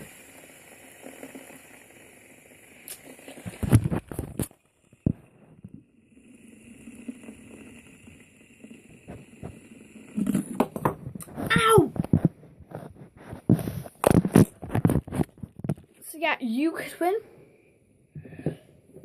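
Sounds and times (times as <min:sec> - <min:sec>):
faint hiss: 0:00.0 - 0:10.6
knocks and thumps: 0:10.2 - 0:15.8.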